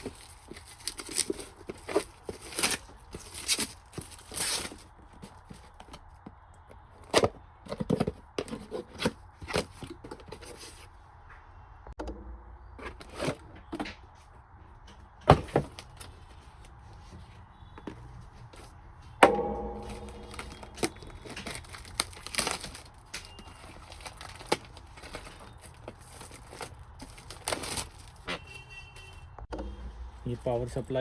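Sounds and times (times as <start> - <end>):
handling knocks and clicks: 17.8 - 28.4
loud metal clank: 19.2 - 22.2, 29.5 - 30.4.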